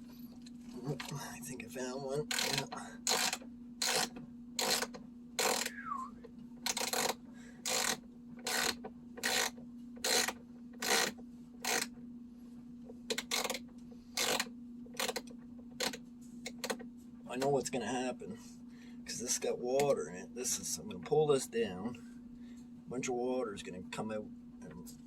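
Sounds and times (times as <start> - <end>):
low hum: 0.0 - 6.6
ratchet wrench clicking: 2.3 - 5.8, 6.7 - 11.9, 13.1 - 13.6, 14.2 - 16.0.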